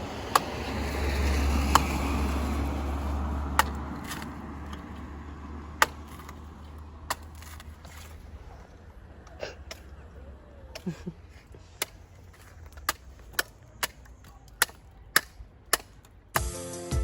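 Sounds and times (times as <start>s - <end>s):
machete chopping coconut: 0.2s - 5.0s, 5.7s - 8.1s, 11.8s - 16.6s.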